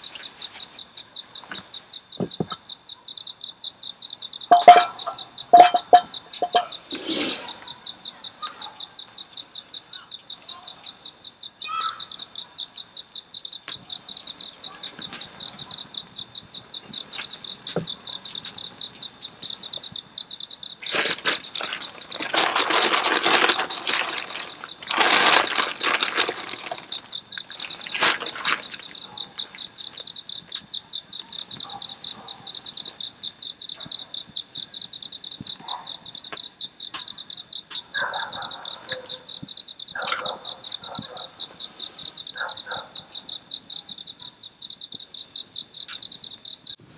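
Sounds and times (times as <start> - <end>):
insects chirping: 0.0 - 46.9
loud hissing noise: 6.4 - 7.6.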